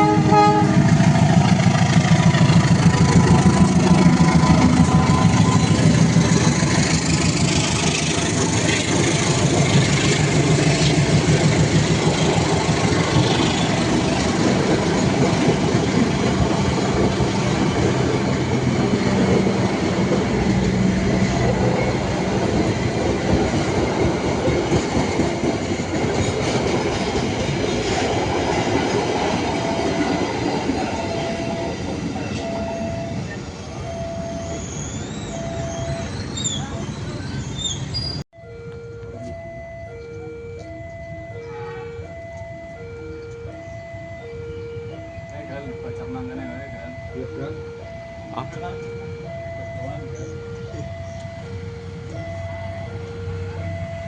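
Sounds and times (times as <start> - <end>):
locomotive engine droning: 0.0 - 54.0
train wheels clattering on rails: 0.7 - 33.4.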